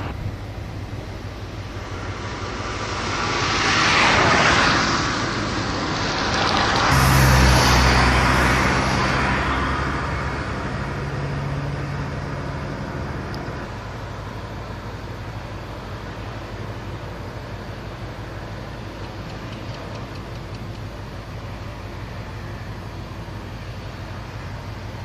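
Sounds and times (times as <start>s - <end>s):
vehicle engine hum passing: 0.0s - 25.0s
vehicle tyre and wind noise: 0.0s - 25.0s.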